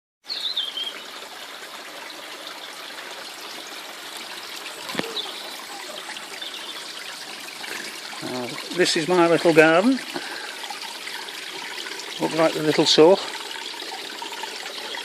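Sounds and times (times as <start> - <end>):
water feature trickling: 0.3 - 15.0.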